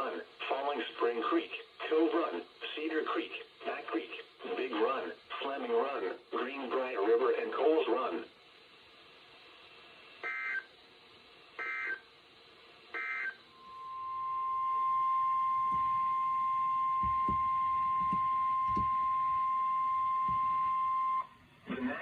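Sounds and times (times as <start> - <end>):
steady warning alarm tone: 10.2 - 10.7, 11.6 - 12.0, 12.9 - 21.4.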